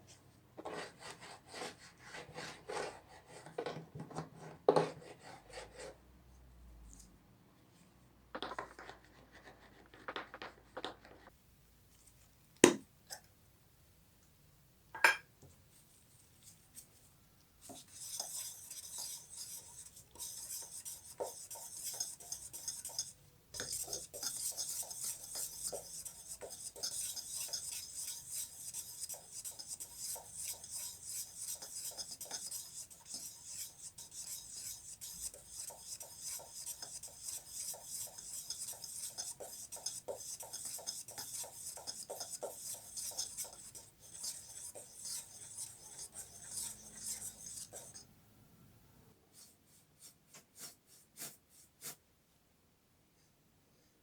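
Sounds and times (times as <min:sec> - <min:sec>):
rasping strokes on wooden tray: 0:17.7 - 0:48.0.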